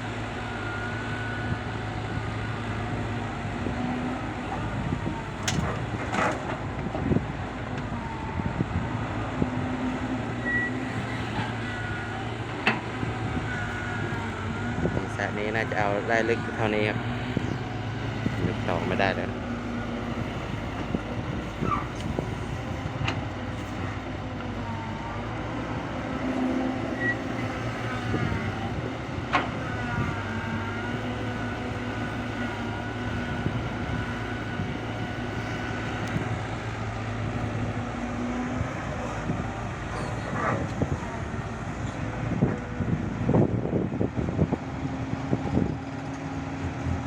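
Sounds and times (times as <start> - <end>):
excavator diesel engine: 0.0 - 47.0
hydraulic whine: 7.8 - 44.5.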